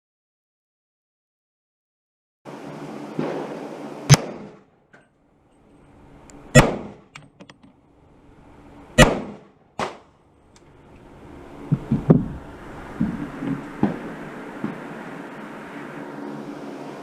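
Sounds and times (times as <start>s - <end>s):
rifle shots: 3.2s - 4.7s, 6.5s - 7.1s, 9.0s - 10.1s.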